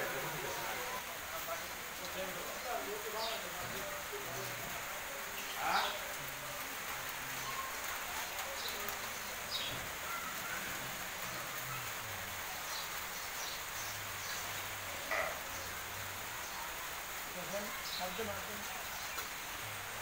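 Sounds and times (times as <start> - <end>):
outdoor hiss: 0.0 - 20.0.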